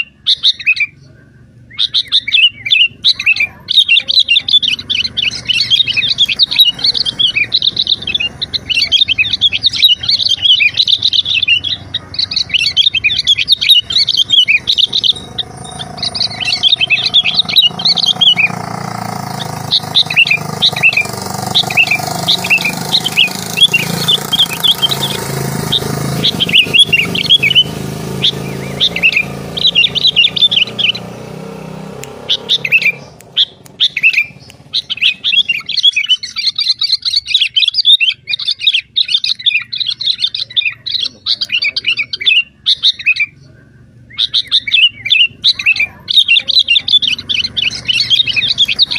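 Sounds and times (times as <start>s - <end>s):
small birds chirping: 0.0s - 48.9s.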